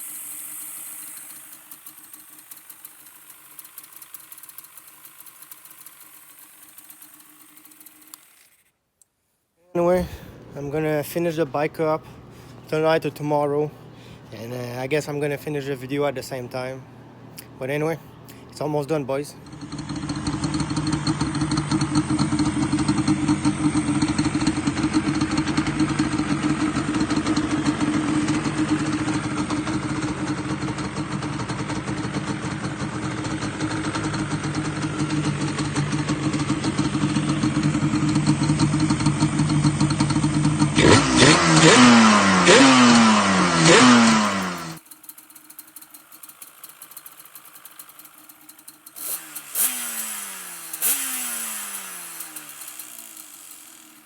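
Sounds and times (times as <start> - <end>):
two-stroke engine running and revving: 0.0 - 8.6, 19.4 - 54.0.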